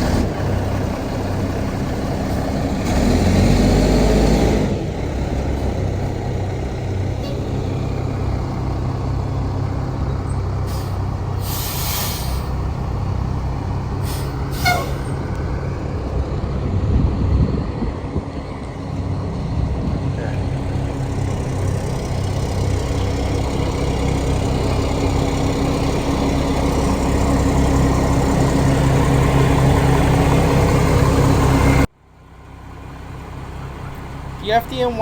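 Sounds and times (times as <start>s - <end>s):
diesel truck engine running: 0.0s - 35.0s
short air hisses: 10.7s - 12.6s, 14.0s - 15.2s.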